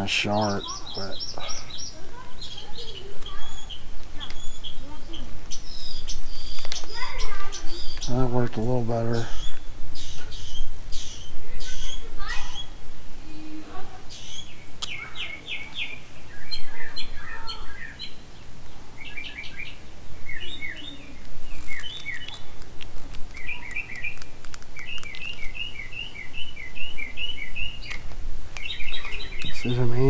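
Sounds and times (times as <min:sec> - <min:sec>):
songbirds chirping: 0:00.0 - 0:30.0
faint clicks: 0:21.2 - 0:25.5.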